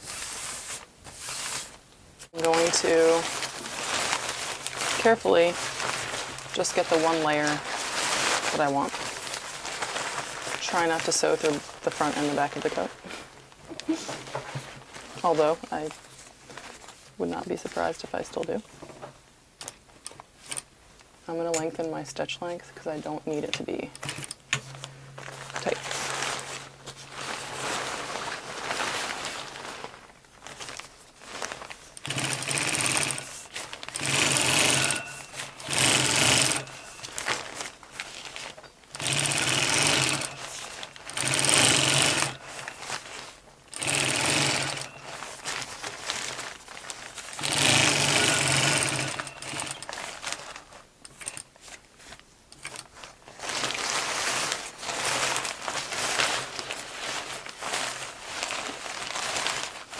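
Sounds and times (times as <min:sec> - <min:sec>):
fabric handling: 0:00.0 - 0:20.7, 0:22.8 - 0:59.9
sewing machine stitching: 0:32.0 - 0:37.2, 0:38.9 - 0:42.5, 0:43.7 - 0:45.2, 0:47.4 - 0:50.3.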